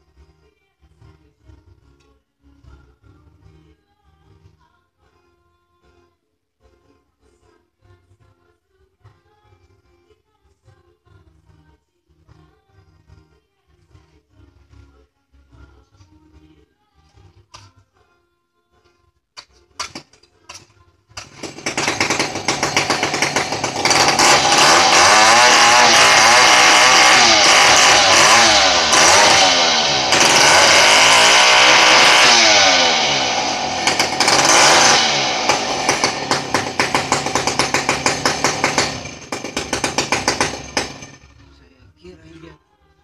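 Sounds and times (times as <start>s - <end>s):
chainsaw engine revving: 21.2s - 41.3s.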